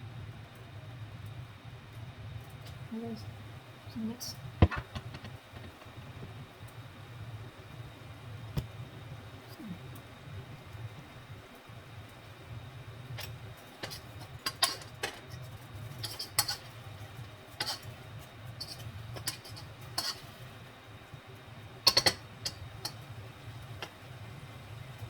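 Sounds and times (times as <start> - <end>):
steady low hum: 0.0 - 25.0
utensils clinking against dishes: 15.9 - 16.8, 18.6 - 20.4, 21.9 - 23.0.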